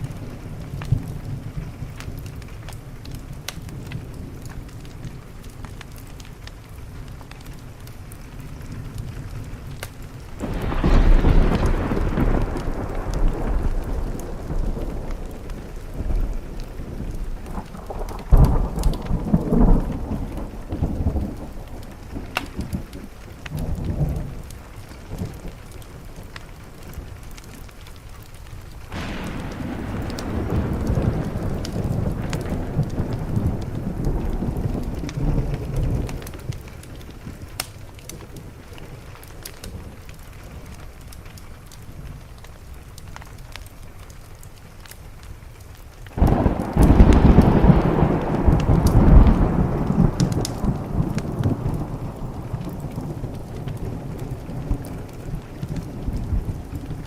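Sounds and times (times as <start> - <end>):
steady rain: 0.0 - 57.0
rolling thunder: 8.5 - 27.8, 28.9 - 40.8, 46.2 - 57.0.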